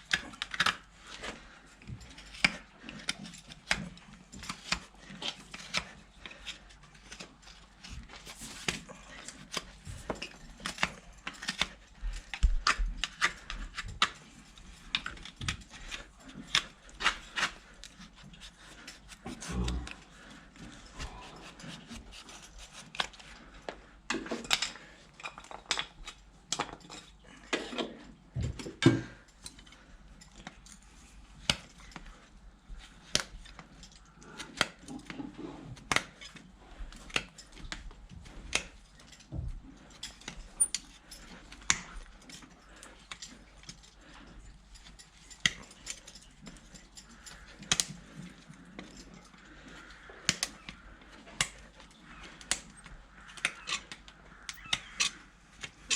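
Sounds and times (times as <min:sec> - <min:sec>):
hoof-trimming tools clicking and scraping: 0:00.0 - 0:55.9.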